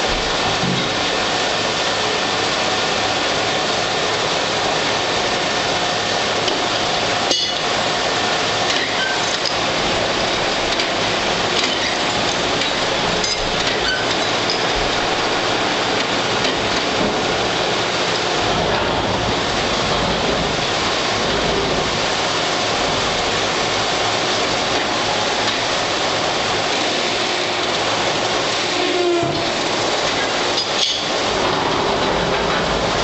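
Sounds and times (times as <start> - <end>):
wood lathe cutting hiss: 23.5 - 31.4.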